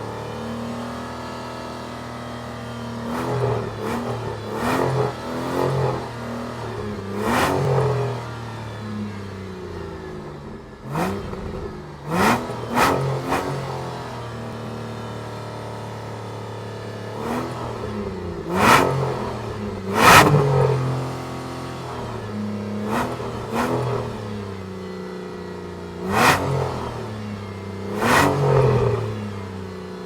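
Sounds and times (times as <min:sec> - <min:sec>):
sports car engine idling: 0:00.0 - 0:30.0
engine revving blips: 0:03.0 - 0:10.2, 0:10.8 - 0:14.2, 0:17.1 - 0:24.8, 0:26.0 - 0:29.7.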